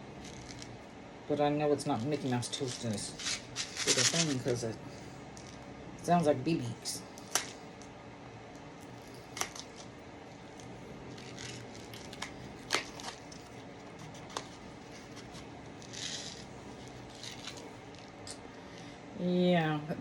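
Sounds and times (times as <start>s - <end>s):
package rustle: 0.2s - 0.8s, 2.0s - 4.8s, 8.8s - 18.2s.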